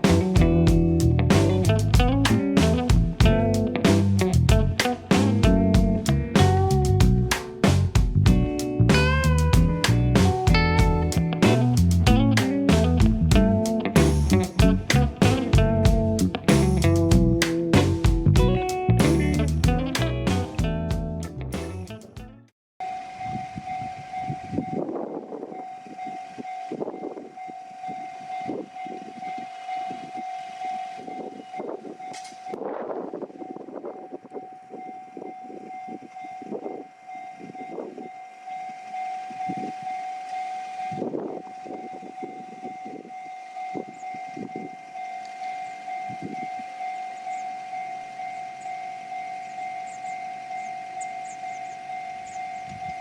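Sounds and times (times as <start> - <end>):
rumbling noise: 0.0 - 22.3
level crossing warning bell: 22.8 - 32.6, 33.2 - 53.0.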